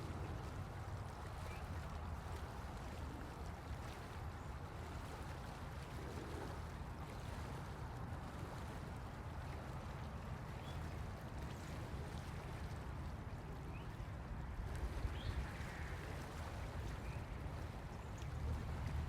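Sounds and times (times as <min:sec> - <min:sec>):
low background rumble: 0:12.9 - 0:19.0.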